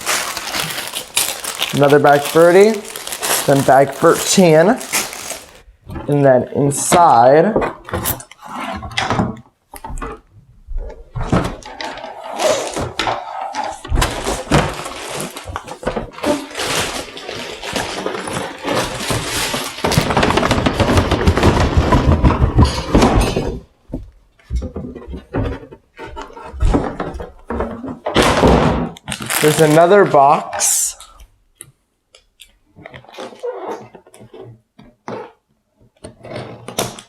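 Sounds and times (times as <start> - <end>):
loose bricks rattling in bags: 0.0 - 5.6, 11.3 - 23.6, 29.2 - 30.8
plastic bags crinkling: 0.0 - 5.7, 11.4 - 22.0, 29.0 - 31.2
cardboard knocks and thuds: 17.6 - 29.0.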